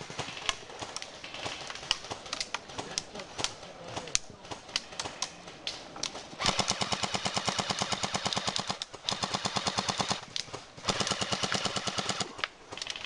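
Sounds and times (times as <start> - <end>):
airsoft gun firing bursts: 6.4 - 13.0.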